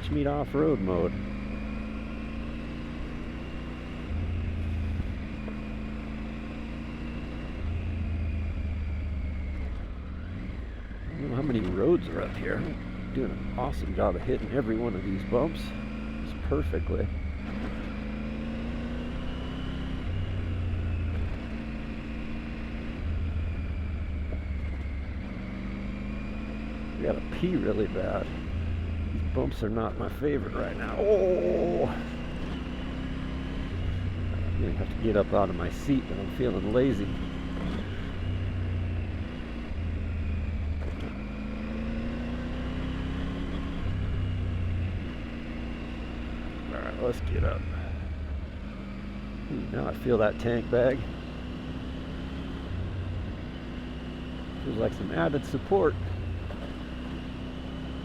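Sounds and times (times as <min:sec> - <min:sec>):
motorcycle engine revving: 0:00.0 - 0:58.0
road and wind noise: 0:00.0 - 0:58.0.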